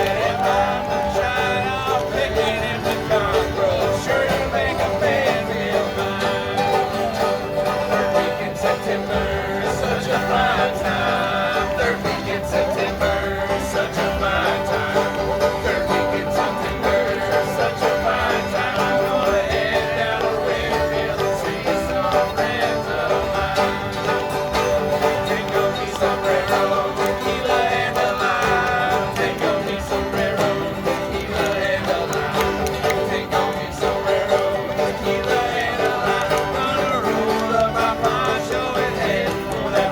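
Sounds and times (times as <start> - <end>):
bluegrass band playing: 0.0 - 39.9.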